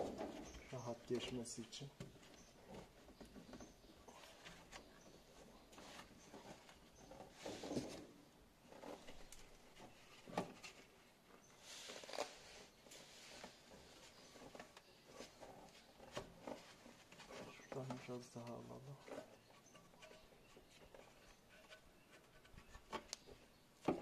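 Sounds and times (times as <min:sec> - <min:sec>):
rubber rubbing sounds: 0:11.6 - 0:18.1.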